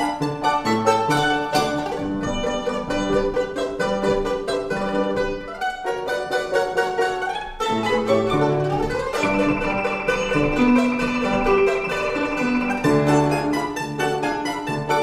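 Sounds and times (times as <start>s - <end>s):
violins playing lively piece: 0.0s - 15.0s
piano accompaniment: 7.7s - 15.0s.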